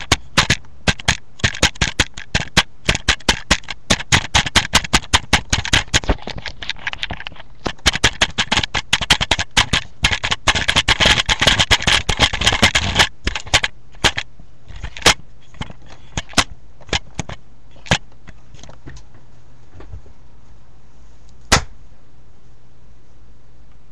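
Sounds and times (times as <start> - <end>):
sharp pops or cracks: 0.0 - 18.0, 21.5 - 21.8.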